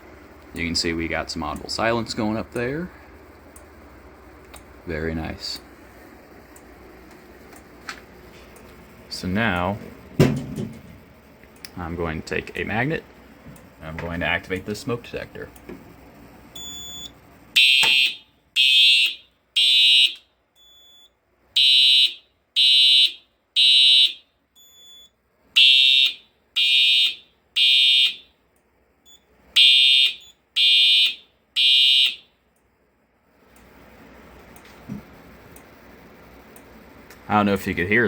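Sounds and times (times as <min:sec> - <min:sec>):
fire alarm horn blasts: 0:16.6 - 0:28.4, 0:29.1 - 0:32.4.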